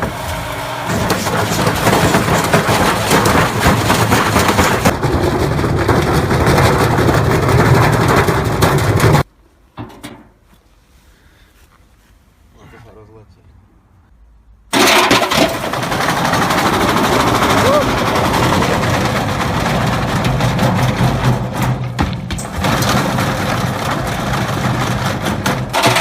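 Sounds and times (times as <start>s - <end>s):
washing machine rattling and knocking: 0.9s - 9.3s, 14.8s - 26.0s.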